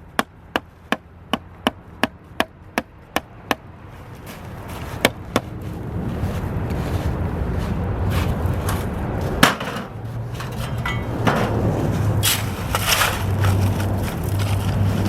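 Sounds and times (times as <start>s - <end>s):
hand tools scraping in gravel: 6.2s - 15.0s.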